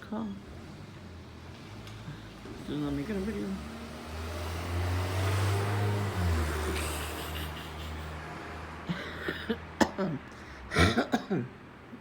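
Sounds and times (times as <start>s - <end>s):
car engine driving off: 0.4s - 7.6s.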